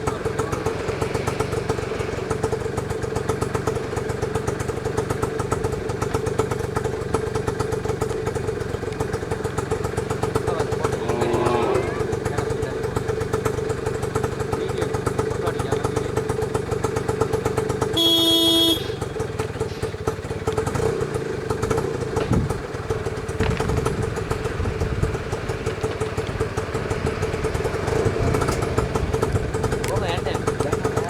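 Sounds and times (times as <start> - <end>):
vehicle engine running: 0.0 - 31.0
horn honk: 17.8 - 20.0.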